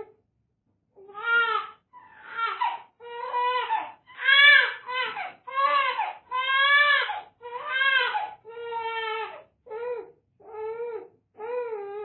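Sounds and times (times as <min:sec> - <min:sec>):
infant crying: 0:01.0 - 0:12.0.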